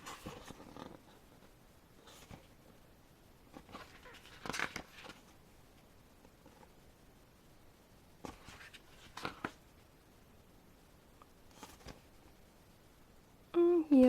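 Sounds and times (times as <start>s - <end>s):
pages rustling: 0.0s - 2.8s, 3.5s - 5.4s, 8.2s - 9.6s, 11.5s - 12.4s.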